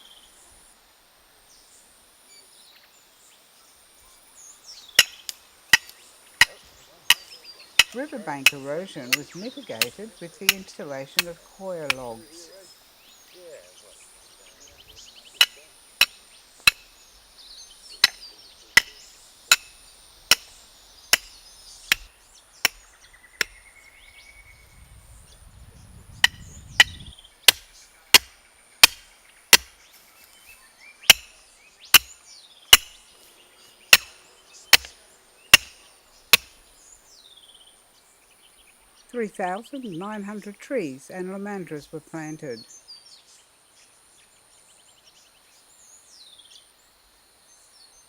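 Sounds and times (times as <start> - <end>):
hammer driving stakes: 5.0 - 12.2, 15.4 - 17.0, 18.0 - 22.8, 26.2 - 29.8, 31.1 - 33.0, 33.9 - 36.6.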